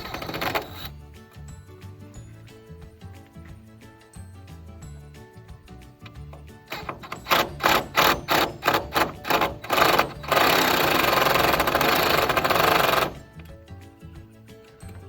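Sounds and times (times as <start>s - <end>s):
power driver driving screw: 0.0s - 0.9s, 6.7s - 13.3s.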